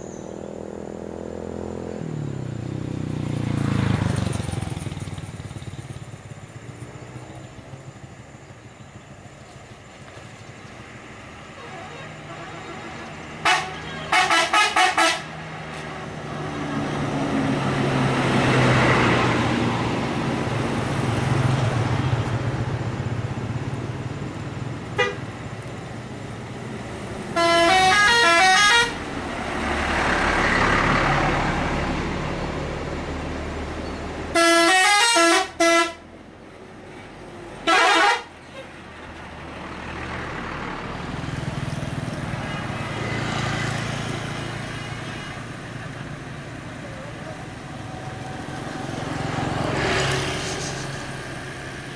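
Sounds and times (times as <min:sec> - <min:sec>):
bus engines: 0:00.0 - 0:51.9
road noise: 0:00.0 - 0:51.9
musical bus horns: 0:11.5 - 0:16.0, 0:24.9 - 0:25.3, 0:27.2 - 0:29.2, 0:34.3 - 0:36.2, 0:37.6 - 0:38.8, 0:44.7 - 0:45.8.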